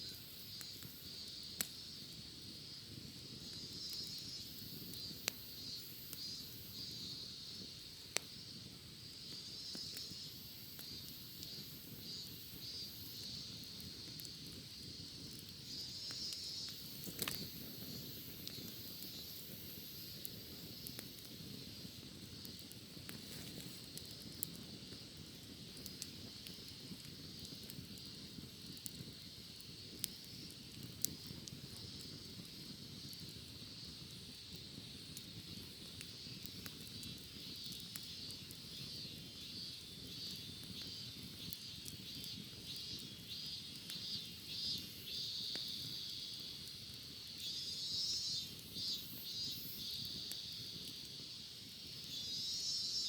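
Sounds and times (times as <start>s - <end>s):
campfire crackling and popping: 0.0s - 53.0s
cicadas droning: 0.0s - 53.0s
pulsing cicada call: 3.4s - 7.8s, 9.1s - 14.2s, 15.6s - 22.0s, 38.1s - 46.6s, 47.4s - 50.8s, 51.8s - 53.0s.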